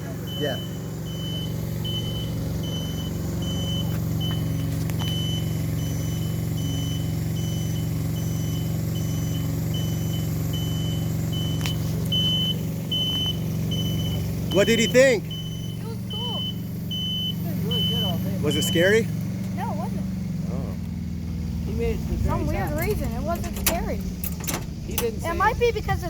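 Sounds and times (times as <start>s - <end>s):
lift engine running: 0.0s - 26.0s
motion alarm beeping: 0.1s - 19.1s.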